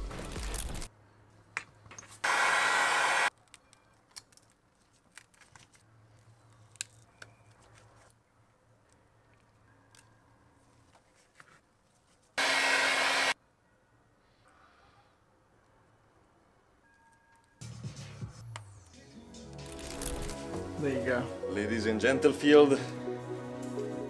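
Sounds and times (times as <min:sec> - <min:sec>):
air blower hissing: 0:02.2 - 0:03.3, 0:12.4 - 0:13.4.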